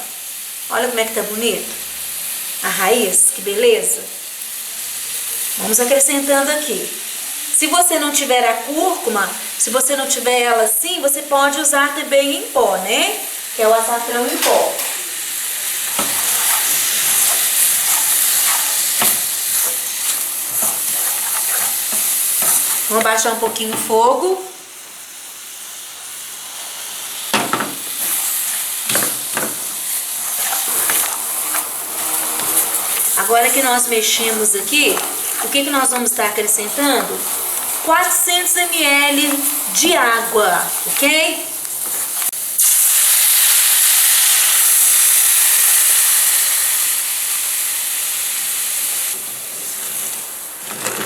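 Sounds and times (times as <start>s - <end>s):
food sizzling in a pot: 0.0s - 50.9s
water hissing in hot syrup: 12.9s - 23.7s, 24.5s - 50.6s
spoon scraping a pot: 15.9s - 23.9s, 30.2s - 37.8s.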